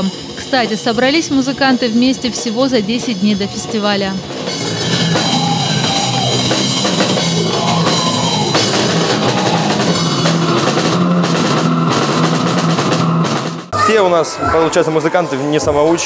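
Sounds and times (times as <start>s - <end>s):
drum kit: 0.0s - 13.9s
heavy metal band playing live: 4.2s - 13.7s.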